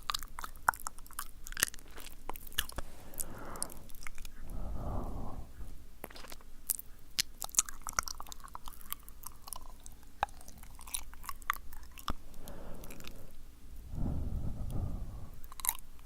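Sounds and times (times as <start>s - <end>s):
wet lip smacks and tongue clicks: 0.0s - 2.9s, 6.0s - 13.3s.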